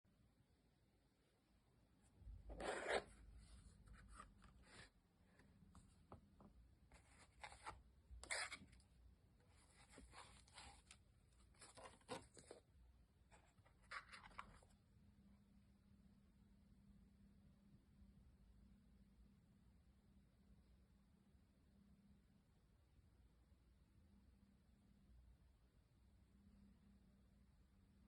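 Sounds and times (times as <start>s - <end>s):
packaging rustling and scraping: 9.5s - 12.6s.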